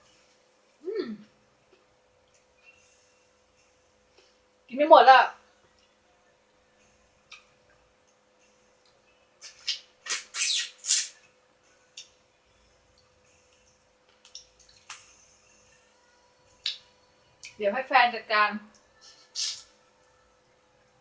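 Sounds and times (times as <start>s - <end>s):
crunching and sucking eating sounds: 9.4s - 11.3s, 19.2s - 19.7s.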